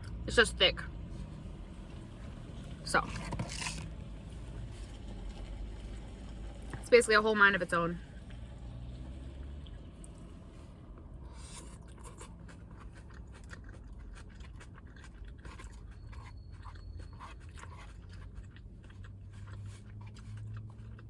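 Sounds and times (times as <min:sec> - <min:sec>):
person chewing crunchy salad: 0:03.0 - 0:03.9, 0:11.2 - 0:21.0.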